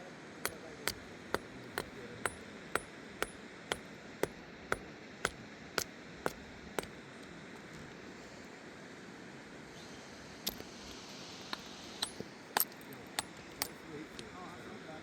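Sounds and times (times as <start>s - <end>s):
hand tool tapping hard material: 0.5s - 4.8s.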